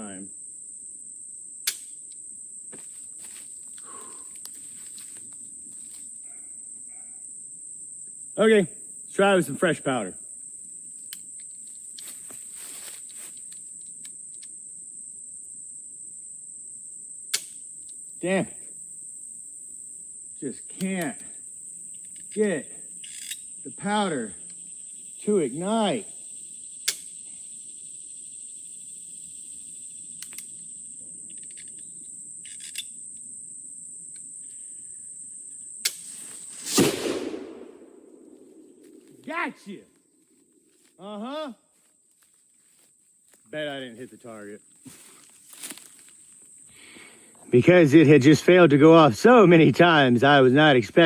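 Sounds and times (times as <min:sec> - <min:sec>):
insects chirring: 0:00.0 - 0:51.0
short rustle: 0:12.0 - 0:13.5
gunshot bang: 0:36.7 - 0:38.8.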